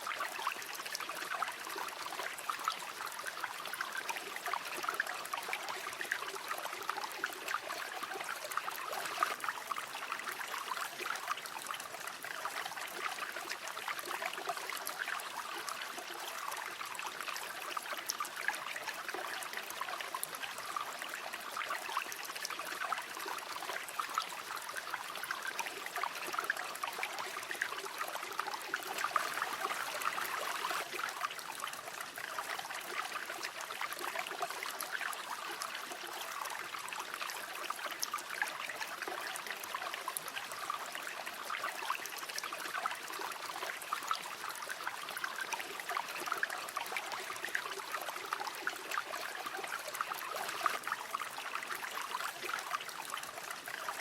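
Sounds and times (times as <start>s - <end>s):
river water babbling over stones: 20.5s - 54.0s.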